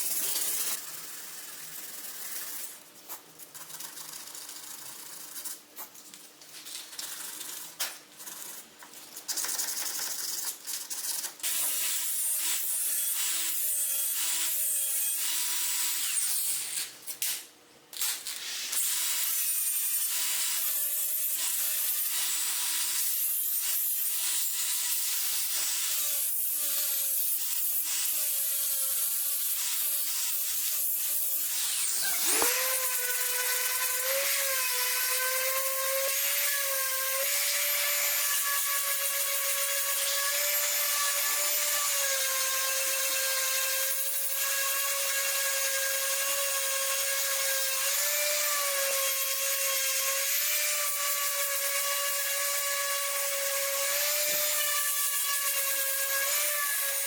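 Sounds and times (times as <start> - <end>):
electric power tool whining: 31.7 - 34.2.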